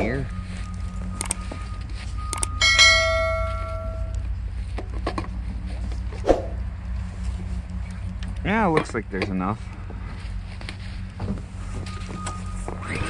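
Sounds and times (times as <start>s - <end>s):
engine idling hum: 0.0s - 13.0s
metallic bell-like ring: 2.3s - 4.2s
handling clicks and knocks: 7.9s - 9.8s.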